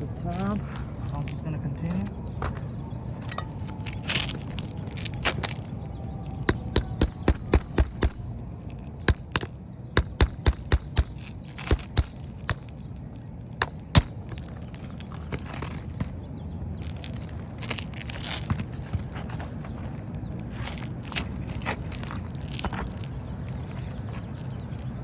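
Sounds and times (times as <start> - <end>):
hammer knocking nails: 6.5 - 8.2, 9.1 - 12.7, 13.6 - 14.2.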